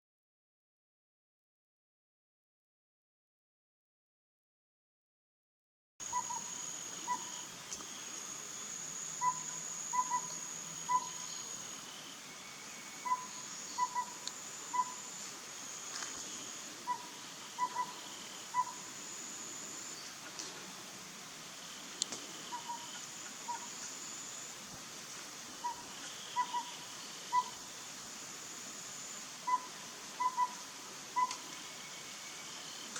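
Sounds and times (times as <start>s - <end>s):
owlet whistled song: 6.0s - 7.4s, 9.2s - 11.5s, 12.4s - 15.1s, 16.9s - 18.9s, 25.6s - 27.6s, 29.4s - 30.6s, 31.2s - 32.9s
high insect trilling: 6.0s - 20.2s.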